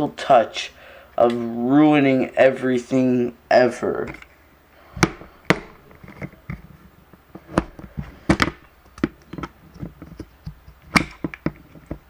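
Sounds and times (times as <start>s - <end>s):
tools clicking and tapping: 7.3s - 12.0s.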